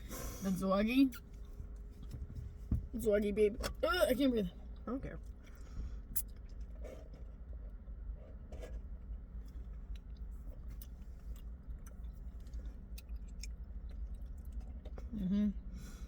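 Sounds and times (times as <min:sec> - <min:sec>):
low steady hum: 0:00.0 - 0:16.0
chewing and mouth sounds: 0:04.6 - 0:07.8, 0:09.4 - 0:15.4
small wet clicks and crunches: 0:09.4 - 0:15.1.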